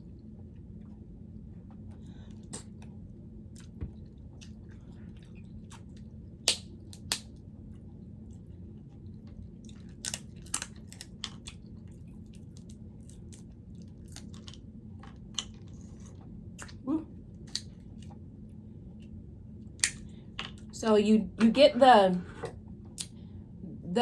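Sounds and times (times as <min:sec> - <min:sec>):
chewing noodles: 0:01.6 - 0:06.2, 0:06.9 - 0:16.8.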